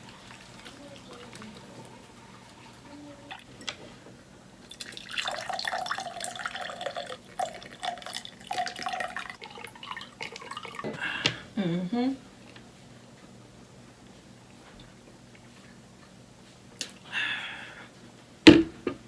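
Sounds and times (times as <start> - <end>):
iced tea poured into a glass: 0.0 - 3.5, 4.7 - 10.9.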